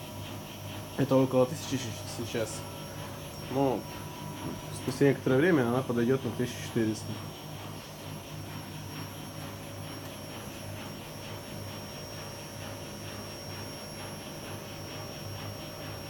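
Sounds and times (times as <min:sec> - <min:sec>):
second washing machine spinning: 0:00.0 - 0:16.0
washing machine spinning: 0:00.0 - 0:16.0.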